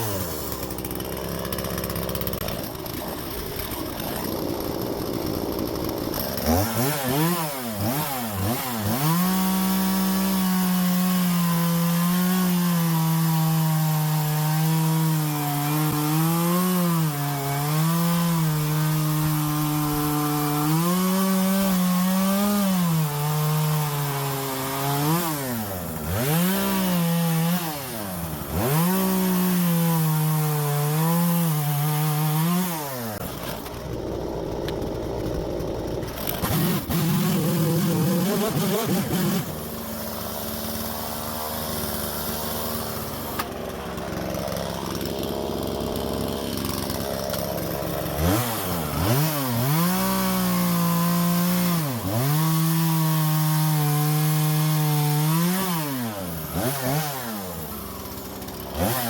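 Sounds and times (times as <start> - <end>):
chainsaw cutting wood: 0.0 - 59.0
chainsaw revving: 0.0 - 59.0.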